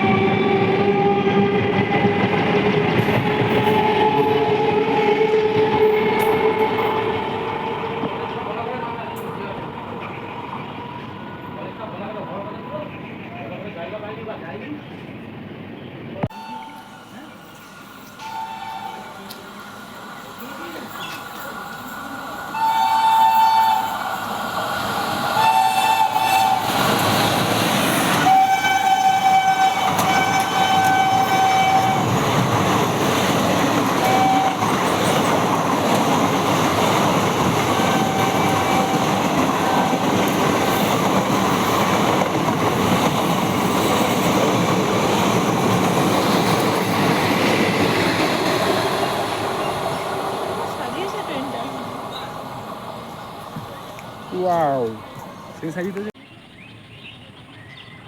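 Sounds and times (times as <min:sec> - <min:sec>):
train horn blasts: 0:00.0 - 0:07.2, 0:16.3 - 0:17.1, 0:18.2 - 0:19.4, 0:22.5 - 0:24.0, 0:25.4 - 0:27.0, 0:28.1 - 0:32.2, 0:33.8 - 0:35.1, 0:37.7 - 0:40.4
train rumble and wheel clatter: 0:00.0 - 0:56.2.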